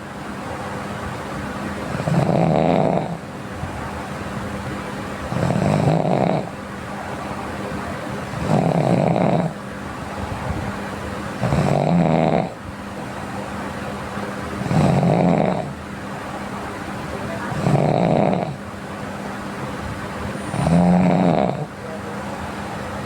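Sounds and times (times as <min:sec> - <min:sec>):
steady background hum: 0:00.0 - 0:23.0
person snoring: 0:01.9 - 0:03.2, 0:05.3 - 0:06.5, 0:08.4 - 0:09.6, 0:11.4 - 0:12.6, 0:14.6 - 0:15.7, 0:17.5 - 0:18.6, 0:20.5 - 0:21.7.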